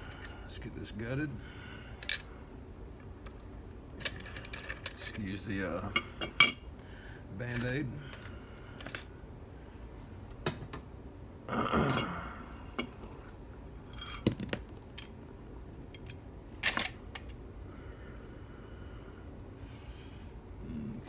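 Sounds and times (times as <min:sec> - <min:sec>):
metal hand tools clinking: 0:05.9 - 0:06.7, 0:11.9 - 0:12.1.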